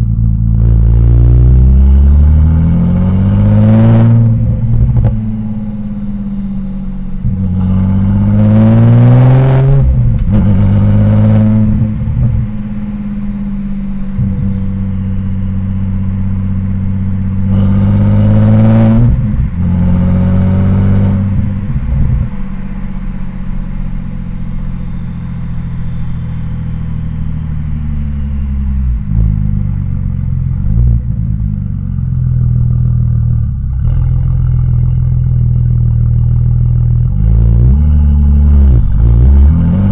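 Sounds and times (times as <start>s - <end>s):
car engine revving: 0.0s - 39.9s
falling turbo whistle: 2.4s - 14.4s, 17.5s - 28.4s.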